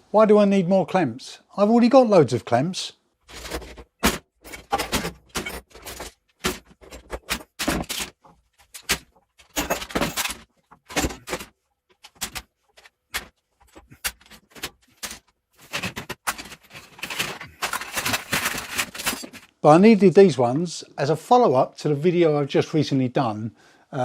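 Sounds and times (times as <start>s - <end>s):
clamps clattering and clicking: 3.4s - 19.5s.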